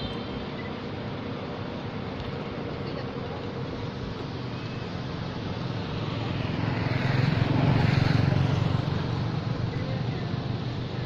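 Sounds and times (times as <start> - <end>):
vehicle engine passing by: 5.0 - 11.0.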